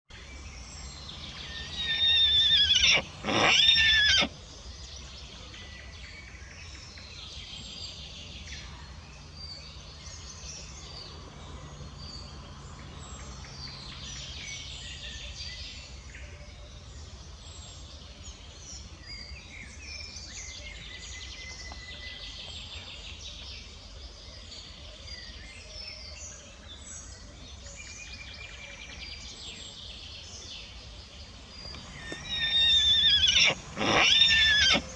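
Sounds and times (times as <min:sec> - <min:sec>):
birds chirping: 0:00.1 - 0:05.8, 0:29.1 - 0:34.9
outdoor background noise: 0:00.1 - 0:34.9
horse whinnying loudly: 0:01.2 - 0:04.4, 0:31.8 - 0:34.9.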